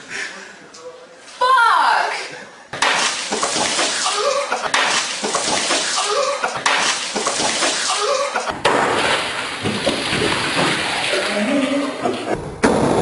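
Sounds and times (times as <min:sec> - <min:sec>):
milk spraying and splashing: 0:04.8 - 0:08.1, 0:09.1 - 0:12.3.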